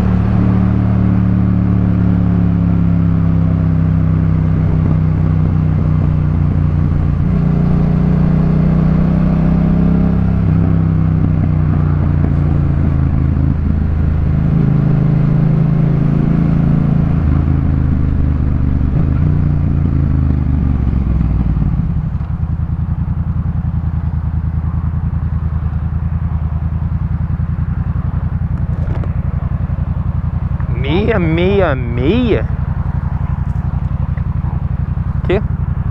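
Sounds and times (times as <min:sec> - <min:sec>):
motorcycle engine revving: 0:00.0 - 0:35.9
motorcycle engine idling: 0:10.3 - 0:35.9.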